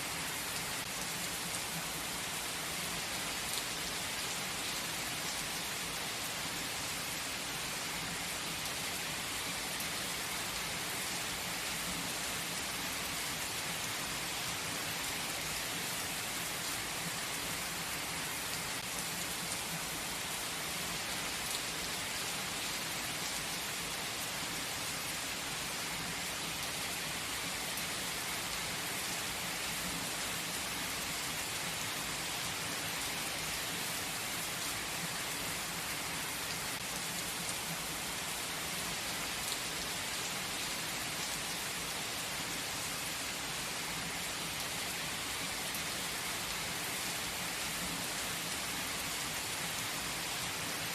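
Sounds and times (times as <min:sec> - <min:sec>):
gentle rain falling: 0:00.0 - 0:50.9.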